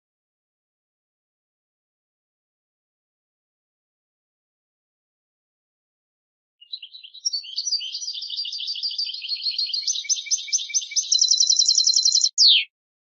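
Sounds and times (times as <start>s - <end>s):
goldfinch singing: 6.6s - 12.7s.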